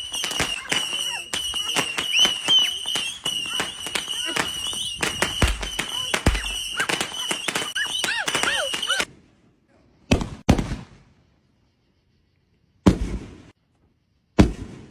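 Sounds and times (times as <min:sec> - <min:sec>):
firework bangs echoing: 0:00.0 - 0:09.1, 0:10.1 - 0:11.1, 0:12.9 - 0:13.5, 0:14.4 - 0:14.9
fireworks crackling: 0:00.0 - 0:09.1
high firework whistle: 0:00.0 - 0:09.1.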